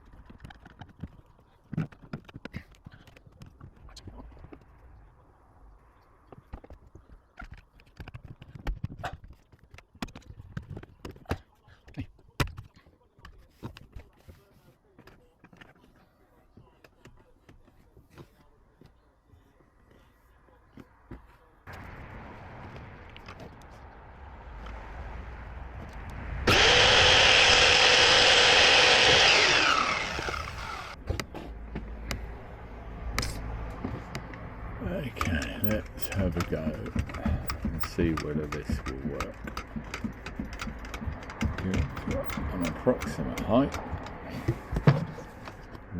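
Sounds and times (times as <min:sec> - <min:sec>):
electric power tool motor: 0:26.5 - 0:31.0
hard parts knocking and clicking: 0:26.5 - 0:32.2, 0:35.0 - 0:45.8.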